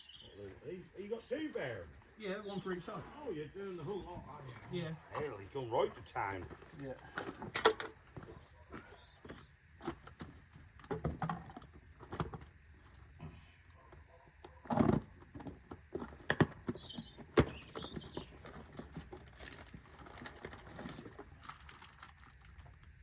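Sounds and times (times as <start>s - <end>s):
tools and parts clinking: 7.1s - 8.3s.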